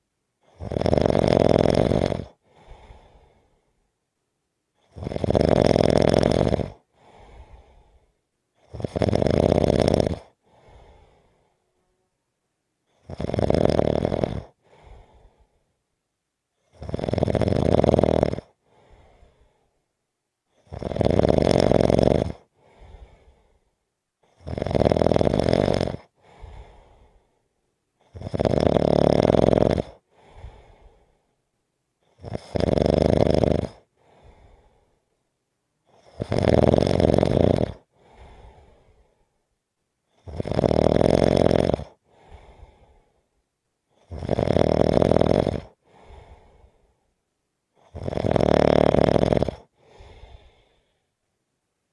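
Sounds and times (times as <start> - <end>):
snoring: 0.4 - 3.4, 4.8 - 8.0, 8.6 - 11.9, 12.9 - 15.4, 16.6 - 19.4, 20.6 - 23.4, 24.2 - 27.2, 28.0 - 31.1, 32.0 - 34.8, 35.9 - 39.1, 40.1 - 43.0, 43.9 - 46.8, 47.8 - 51.0
faint breath: 2.3 - 3.9, 6.8 - 8.3, 10.3 - 11.8, 14.5 - 15.8, 18.5 - 19.9, 22.4 - 23.8, 26.0 - 28.2, 30.0 - 32.2, 33.8 - 35.2, 37.8 - 39.5, 41.9 - 44.1, 45.7 - 47.2, 49.6 - 51.4.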